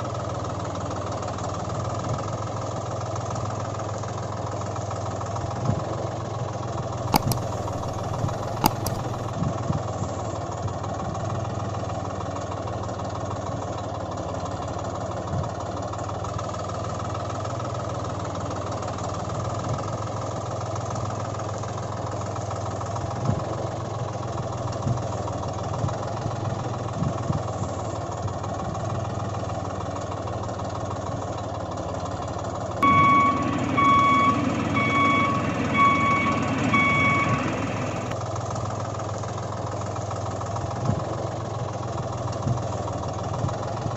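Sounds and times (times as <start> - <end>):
tractor engine rumbling: 0.2 - 16.6, 21.0 - 43.9
sharp clicks: 7.1 - 9.3
reversing alarm beeping: 32.8 - 38.1.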